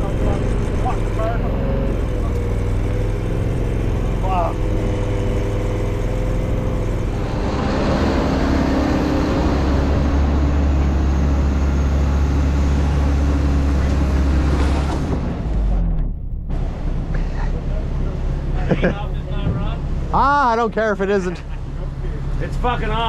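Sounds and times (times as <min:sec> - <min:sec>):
engine droning: 0:00.0 - 0:23.0.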